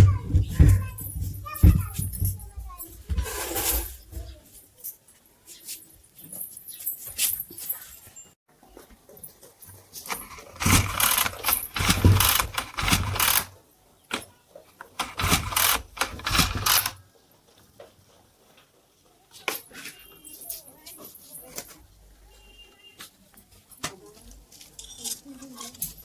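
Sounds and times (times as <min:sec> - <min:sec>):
small petrol engine cranking: 0:10.1 - 0:13.5, 0:14.9 - 0:17.0.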